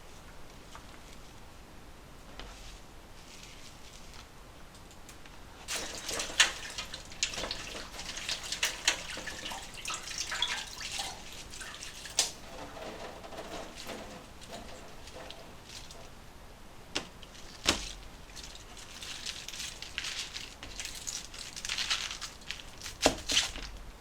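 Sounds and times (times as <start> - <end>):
water splashing and dripping: 5.7 - 16.1.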